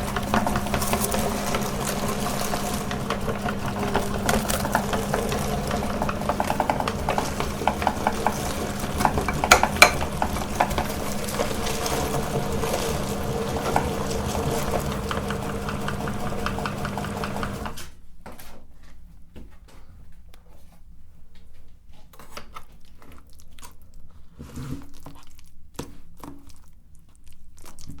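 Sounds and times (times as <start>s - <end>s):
handling clicks and knocks: 0.0s - 17.8s
electric meat grinder running: 0.0s - 17.9s
wet squishing: 22.4s - 28.0s.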